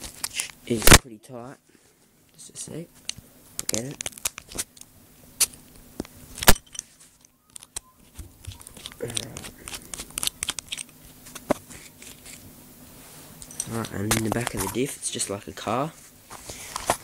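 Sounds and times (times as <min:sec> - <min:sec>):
small parts clicking and rattling: 0:03.0 - 0:05.6, 0:06.4 - 0:12.4, 0:13.4 - 0:15.0.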